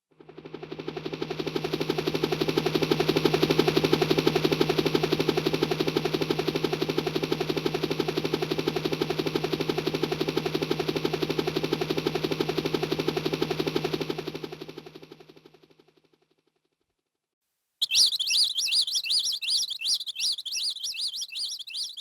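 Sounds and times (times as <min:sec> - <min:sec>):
fast electronic rattle: 0:17.8 - 0:22.0.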